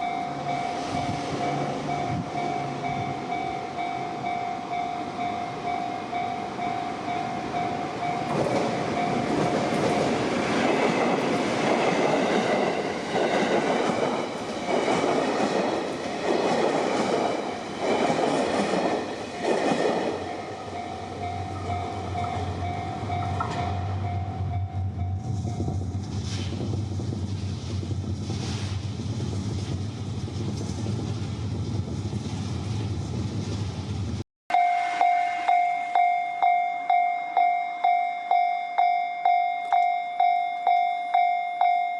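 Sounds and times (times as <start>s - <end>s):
train wheels clattering: 8.0s - 24.2s
level crossing bell ringing: 34.5s - 41.9s.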